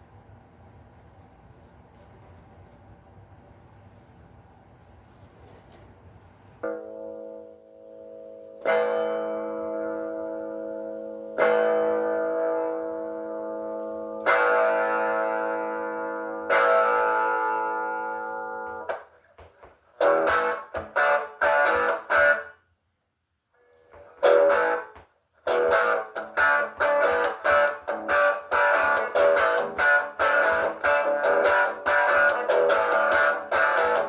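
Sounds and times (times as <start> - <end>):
guitar chords: 6.6 - 22.7, 23.6 - 34.0.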